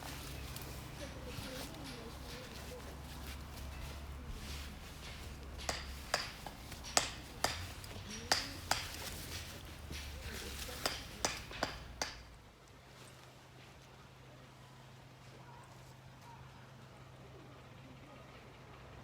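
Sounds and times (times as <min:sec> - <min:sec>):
low steady hum: 0:00.0 - 0:12.5.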